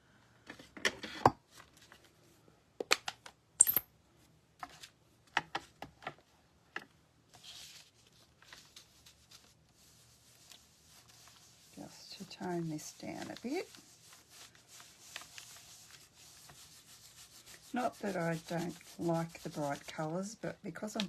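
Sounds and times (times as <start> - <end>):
brush hissing over paper: 8.5 - 20.4.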